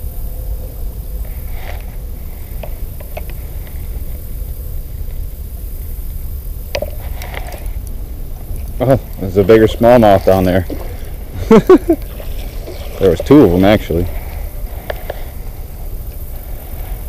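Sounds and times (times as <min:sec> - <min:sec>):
low rumble: 0:00.0 - 0:17.0.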